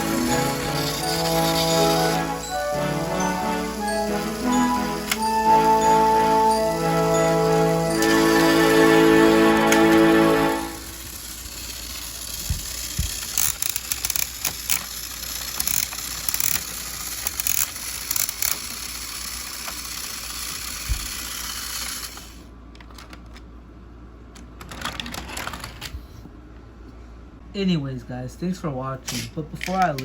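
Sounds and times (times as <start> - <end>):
toy train motor whir: 0.0 - 22.5
wheels clicking and rattling: 10.7 - 22.1.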